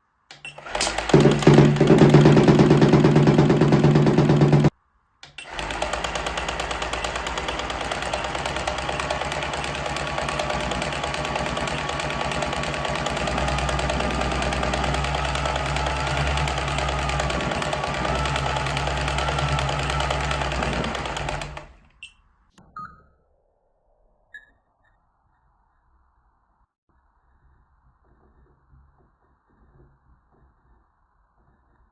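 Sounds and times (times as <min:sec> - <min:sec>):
rapid mechanical rattle: 0:00.4 - 0:04.7, 0:05.4 - 0:21.9.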